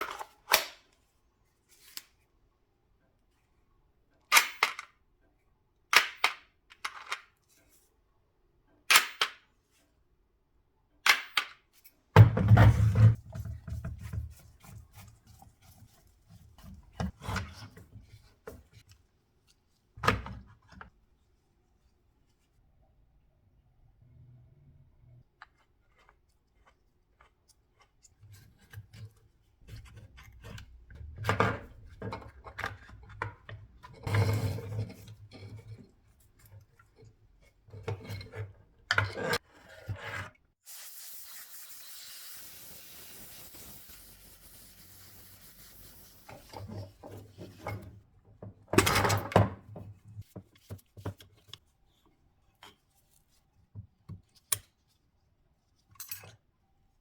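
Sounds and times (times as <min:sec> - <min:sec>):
steady hiss: 0:40.7 - 0:46.3.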